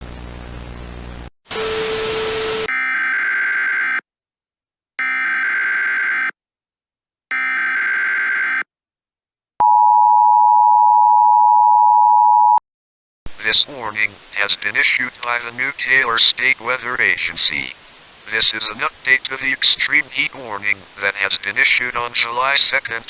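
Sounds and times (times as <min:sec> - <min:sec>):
harsh digital data bursts: 0:02.6 - 0:04.0, 0:05.0 - 0:06.3, 0:07.3 - 0:08.6
static with steady low tone: 0:13.3 - 0:22.3.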